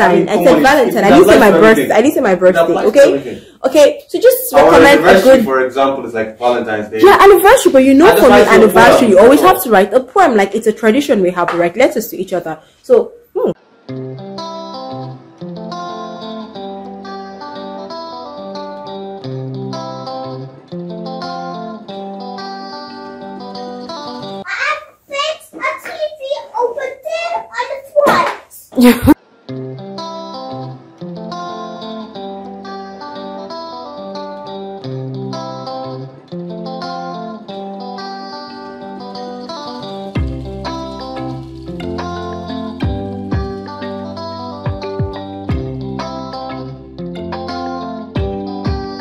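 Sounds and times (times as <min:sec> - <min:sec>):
plucked guitar melody: 0:00.0 - 0:03.5, 0:04.5 - 0:05.6, 0:07.0 - 0:09.9, 0:13.4 - 0:24.4, 0:29.0 - 0:49.0.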